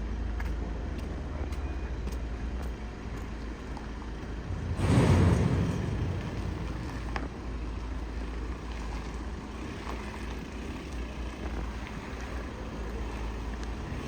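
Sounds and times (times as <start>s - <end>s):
wind noise on microphone: 4.2s - 7.9s.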